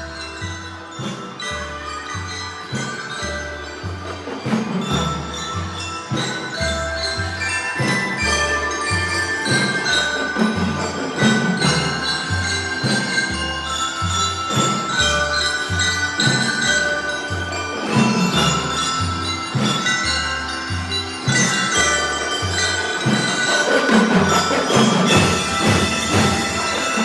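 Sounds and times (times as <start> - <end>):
bell lyres playing melody: 0.0 - 27.0
steady bass drum beat: 25.1 - 27.0.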